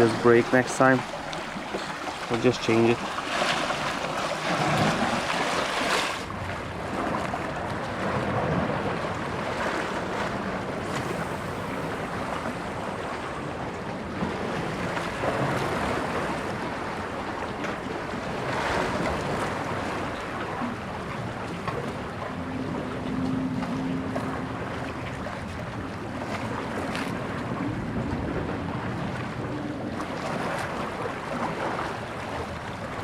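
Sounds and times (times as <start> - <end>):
sea waves washing ashore: 0.0 - 33.0
wind on microphone: 3.6 - 33.0.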